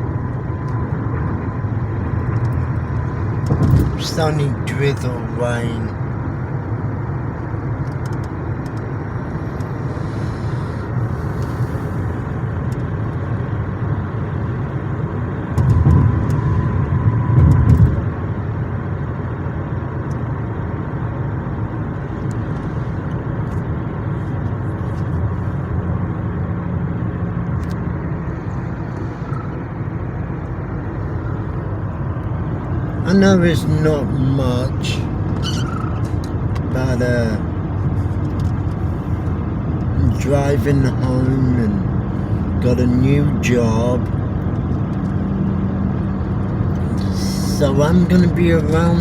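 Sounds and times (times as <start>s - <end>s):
road and engine rumble: 0.0s - 49.0s
louder low rumble: 15.2s - 19.0s, 27.4s - 36.3s.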